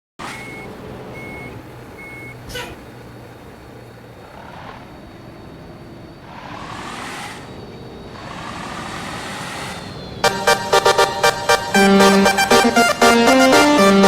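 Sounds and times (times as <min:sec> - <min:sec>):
engine humming: 0:00.2 - 0:14.0
reversing alarm beeps: 0:00.3 - 0:02.4.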